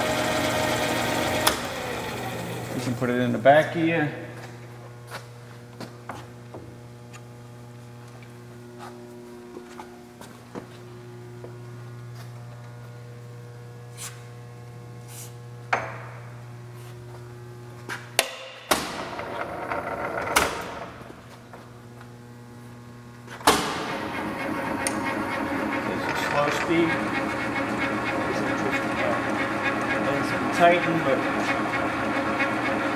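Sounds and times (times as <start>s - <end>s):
lathe humming: 0.0s - 4.6s, 19.1s - 21.4s, 23.4s - 32.9s.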